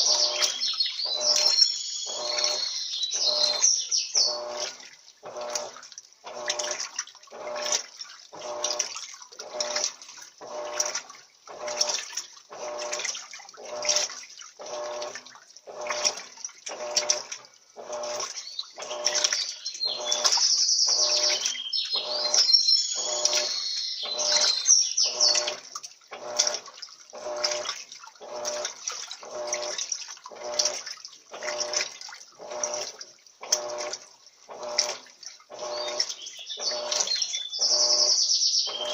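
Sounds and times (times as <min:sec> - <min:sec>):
washing machine water sloshing: 0:00.0 - 0:38.9.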